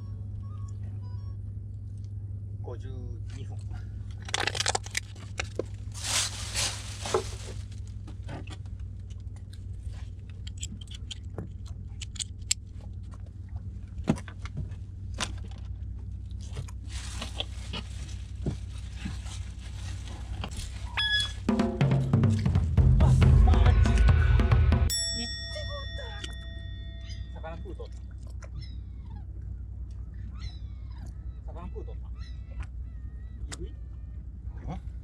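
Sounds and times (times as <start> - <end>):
steady low hum: 0.0 - 35.0
brief rustling: 4.4 - 8.0.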